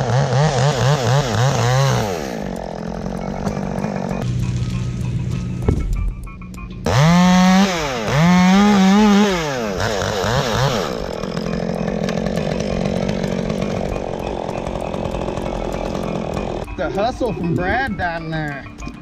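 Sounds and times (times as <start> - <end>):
chainsaw revving: 0.0 - 5.0, 6.8 - 16.8.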